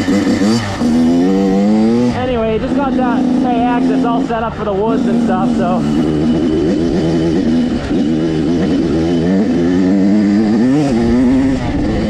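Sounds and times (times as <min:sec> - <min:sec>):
dirt bike engine revving: 0:00.0 - 0:12.0
wind rumble on microphone: 0:10.2 - 0:12.0.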